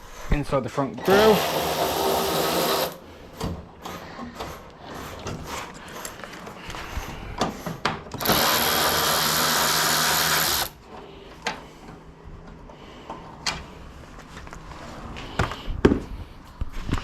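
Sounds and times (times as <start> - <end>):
power drill running: 1.0 - 3.0, 8.2 - 10.8.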